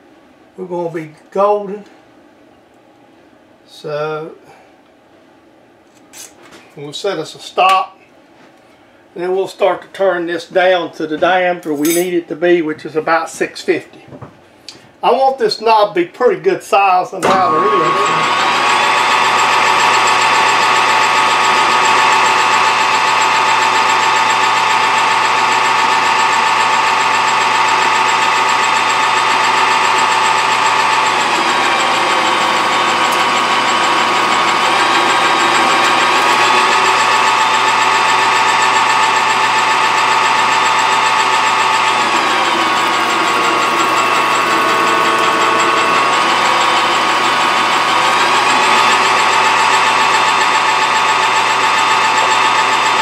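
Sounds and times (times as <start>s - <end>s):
machine whine: 17.2s - 53.0s
metal lathe running: 17.2s - 53.0s.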